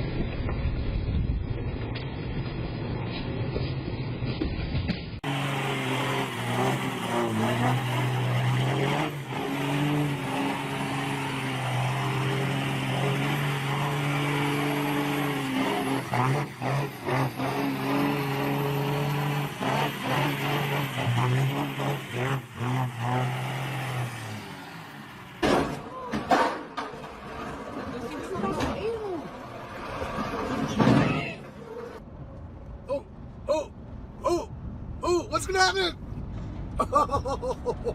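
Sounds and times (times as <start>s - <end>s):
heavy vehicle engine running: 0.0s - 25.5s.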